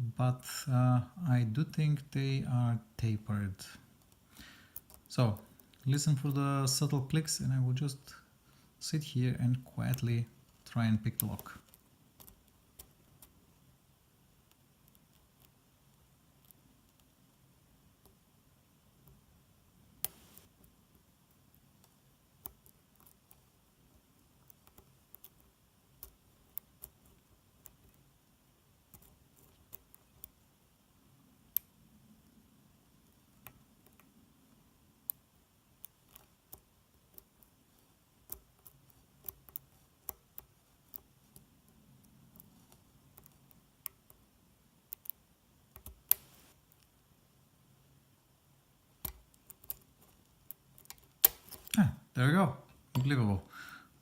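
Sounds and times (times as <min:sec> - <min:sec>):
lock pick clicking pins: 0:44.9 - 0:46.8, 0:49.0 - 0:51.8.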